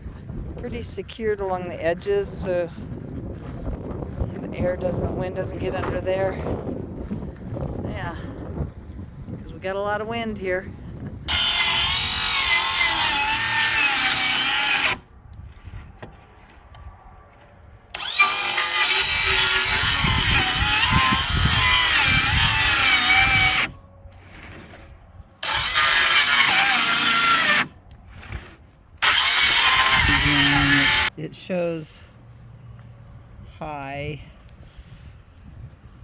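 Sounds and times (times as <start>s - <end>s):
power tool cutting wood: 11.3s - 15.0s, 17.9s - 23.8s, 25.4s - 27.8s, 29.0s - 31.1s.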